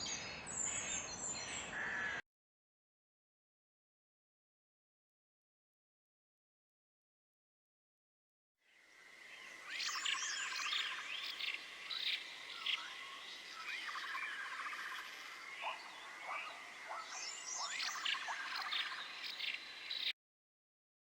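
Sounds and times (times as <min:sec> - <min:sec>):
chirping and swooping calls: 0:09.4 - 0:20.1.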